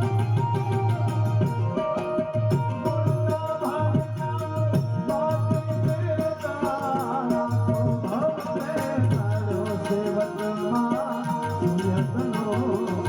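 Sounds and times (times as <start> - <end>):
wavering melody line: 0.0 - 4.1
steady percussion beat: 0.0 - 13.0.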